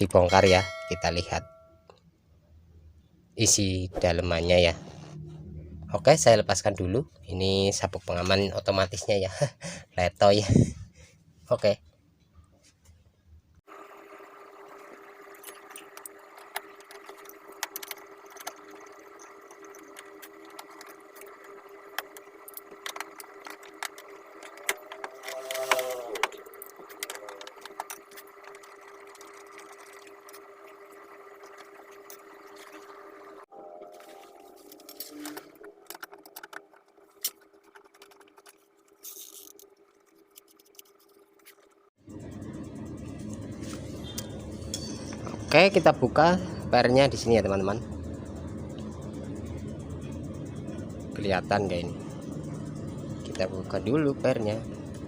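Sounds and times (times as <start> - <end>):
steady background hum: 0.0 - 55.0
metallic clicks and rattles of tools: 34.7 - 41.8.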